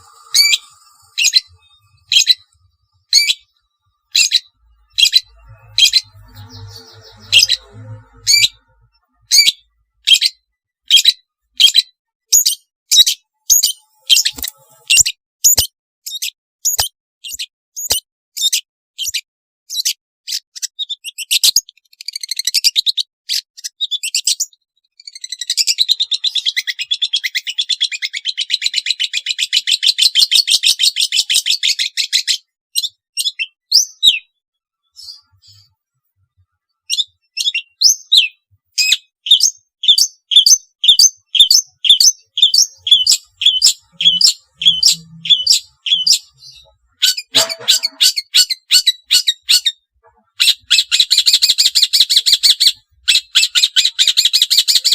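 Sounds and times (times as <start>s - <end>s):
bird chattering trill: 0.0s - 8.7s, 9.3s - 19.2s, 36.9s - 54.9s
sharp high bird calls: 0.0s - 34.3s, 36.8s - 54.9s.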